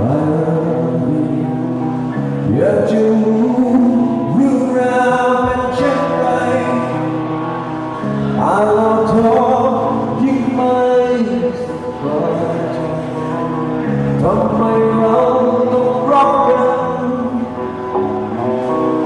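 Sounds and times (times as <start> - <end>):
live rock band playing: 0.0 - 19.0.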